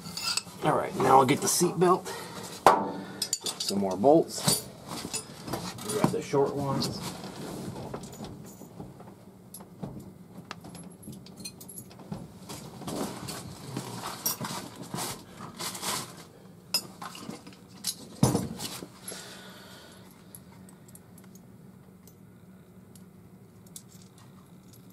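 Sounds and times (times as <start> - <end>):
metal bolts clinking: 3.2 - 6.1.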